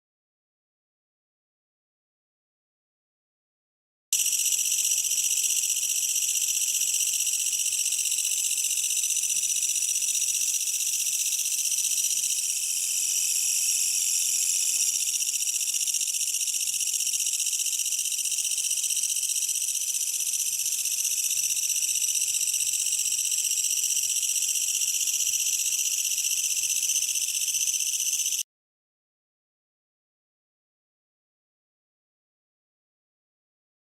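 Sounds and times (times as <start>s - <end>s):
katydid buzzing: 4.2s - 28.4s.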